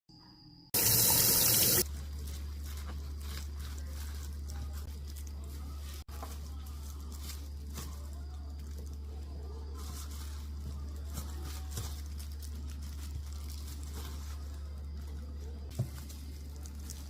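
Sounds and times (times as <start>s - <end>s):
tap water running: 0.8s - 1.8s.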